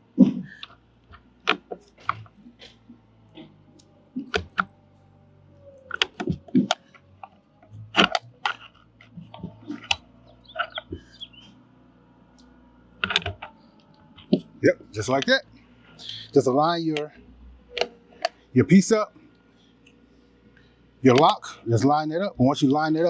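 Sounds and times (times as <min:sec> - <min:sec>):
faint low hum: 0:00.0 - 0:23.0
door lock parts clicking: 0:13.0 - 0:13.6.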